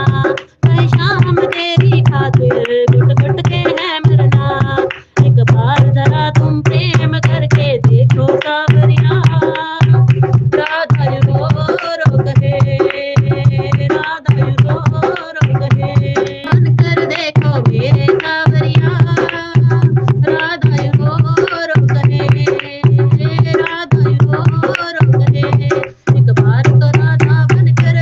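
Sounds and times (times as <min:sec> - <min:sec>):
devotional song with percussion: 0:00.0 - 0:28.0
heavy bass beat: 0:13.2 - 0:28.0.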